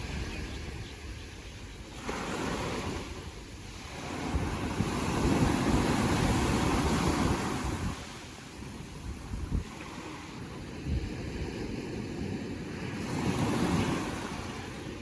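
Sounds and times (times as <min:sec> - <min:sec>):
ocean waves washing ashore: 0:00.0 - 0:15.0
wind rumbling on microphone: 0:00.0 - 0:15.0.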